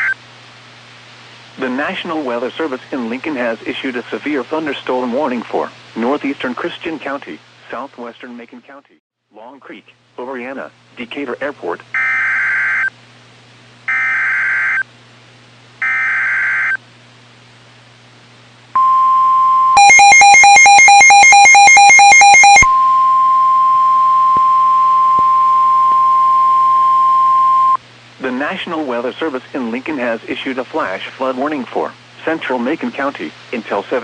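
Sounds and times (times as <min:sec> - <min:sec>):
steady weather radio alert tone: 0:19.7 - 0:27.8
rapid two-pitch electronic beeping: 0:19.8 - 0:23.0.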